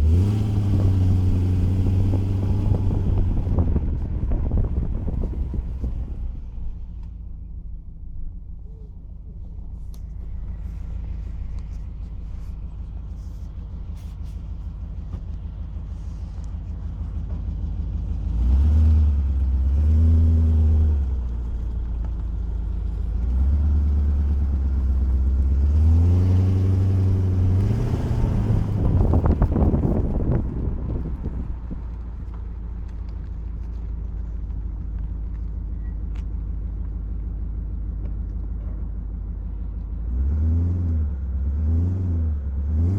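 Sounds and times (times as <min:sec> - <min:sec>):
car engine idling and revving: 0:00.0 - 0:42.9.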